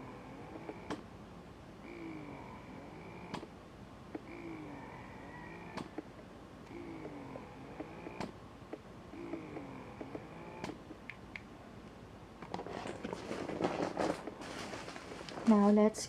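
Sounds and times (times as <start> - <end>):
breast pump motor hum with whine: 0.0 - 11.8.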